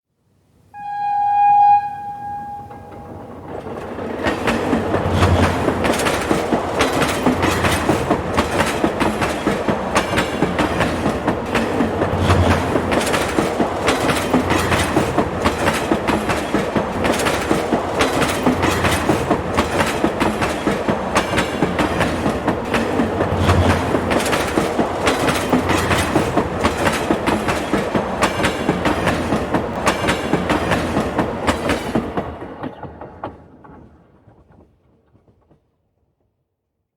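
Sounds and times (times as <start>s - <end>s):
train horn: 0.8s - 3.4s
train wheels clattering: 1.6s - 35.7s.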